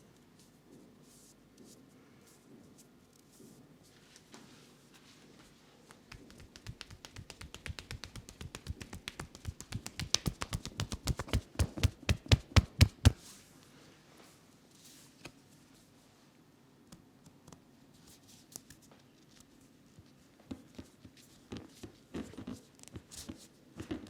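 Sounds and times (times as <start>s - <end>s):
rhythmic hand slaps of massage: 5.8s - 13.3s.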